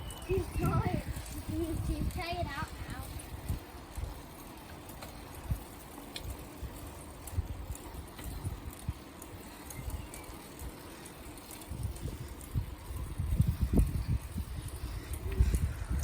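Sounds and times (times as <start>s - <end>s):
wind on microphone: 0.0s - 4.3s, 6.6s - 9.1s, 11.4s - 16.0s.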